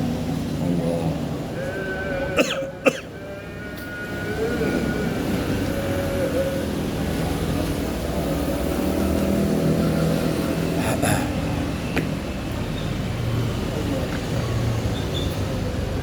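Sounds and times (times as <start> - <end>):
vehicle engine rumbling: 4.0 - 16.0.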